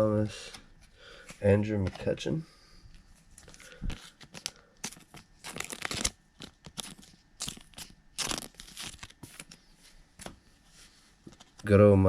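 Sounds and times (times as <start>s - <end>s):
plastic packaging crinkling: 3.4s - 9.6s.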